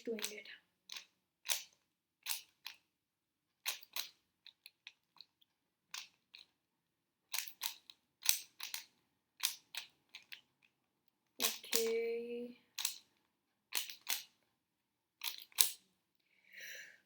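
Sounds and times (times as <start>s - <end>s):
plastic cube layers clacking: 0.0s - 2.9s, 3.5s - 6.6s, 7.3s - 10.8s, 11.4s - 12.0s, 12.7s - 14.5s, 15.2s - 15.9s.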